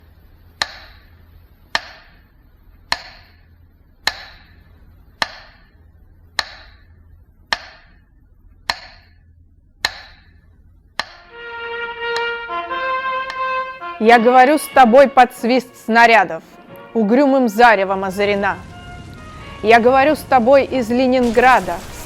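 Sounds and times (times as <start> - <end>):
faint low hum: 0.0 - 22.0
metronome ticking: 0.6 - 1.1, 4.0 - 4.6, 5.2 - 5.7, 6.4 - 6.9, 7.5 - 8.0, 8.6 - 9.2, 9.8 - 10.4, 11.0 - 12.5.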